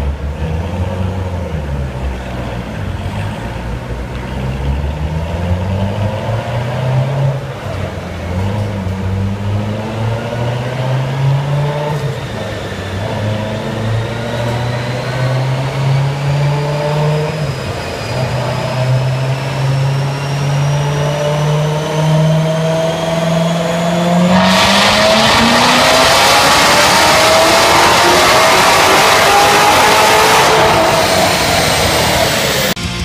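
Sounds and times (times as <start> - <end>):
car engine revving on dyno: 0.0 - 32.8.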